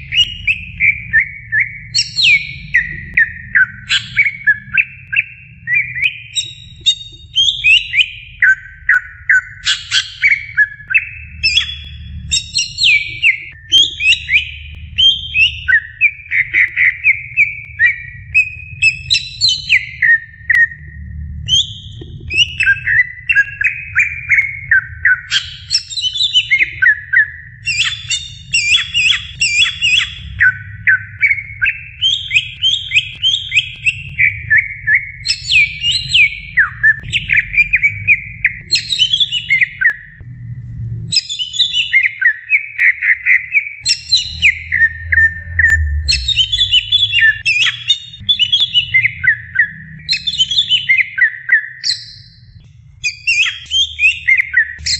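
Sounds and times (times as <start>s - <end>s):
bird singing rapid chattering song: 0.0s - 40.2s, 41.1s - 54.9s
steady low rumble: 10.4s - 25.7s, 26.4s - 42.0s, 44.0s - 47.5s.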